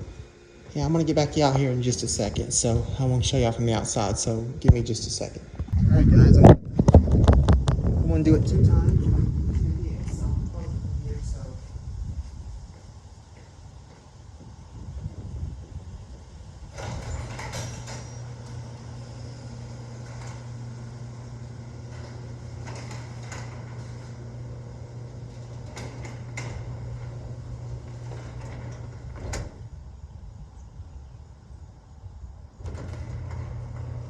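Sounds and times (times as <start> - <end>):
garage door opener motor hum: 6.4 - 34.0
garage door clunk: 16.6 - 29.8, 32.6 - 34.0
chain and door rattling: 16.8 - 18.7.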